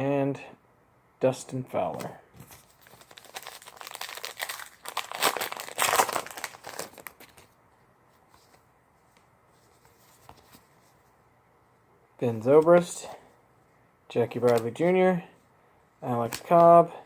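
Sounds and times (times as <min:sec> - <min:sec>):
plastic wrapper crinkling and tearing: 0:02.6 - 0:07.5.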